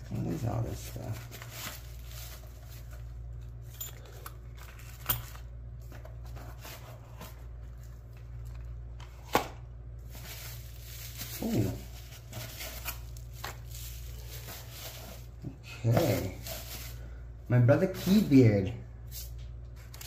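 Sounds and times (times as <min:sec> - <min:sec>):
paper and plastic packaging rustling: 0:00.0 - 0:18.7.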